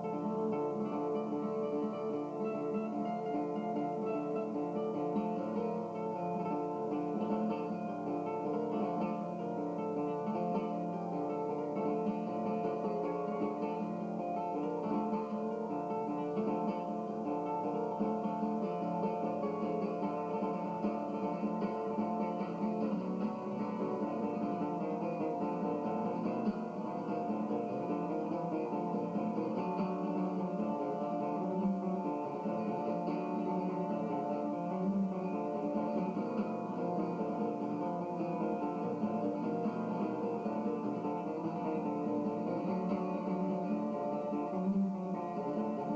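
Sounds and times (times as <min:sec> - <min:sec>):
acoustic guitar plucking: 0:00.0 - 0:45.9.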